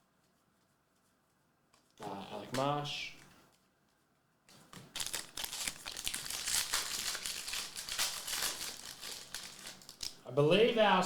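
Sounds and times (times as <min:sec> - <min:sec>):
foil wrapper tearing and crinkling: 0:04.5 - 0:10.2.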